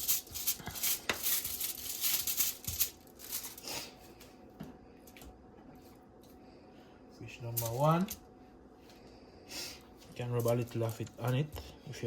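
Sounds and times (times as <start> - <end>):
aluminium foil crinkling: 0.0 - 3.9.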